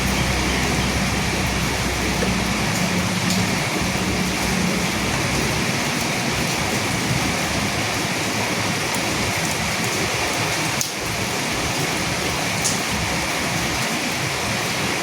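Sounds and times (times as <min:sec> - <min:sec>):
thunder rumble: 0:00.0 - 0:13.7
steady rain falling: 0:00.0 - 0:15.0.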